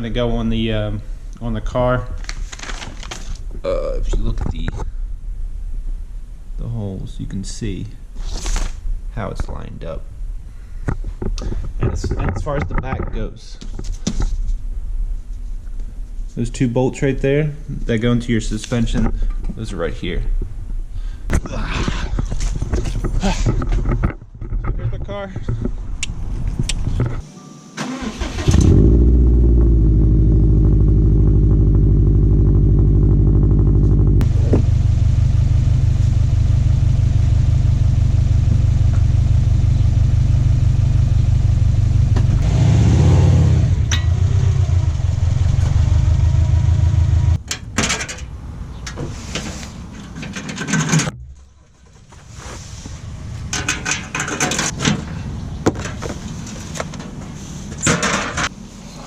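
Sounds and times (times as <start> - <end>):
car engine starting and idling: 27.8 - 48.8.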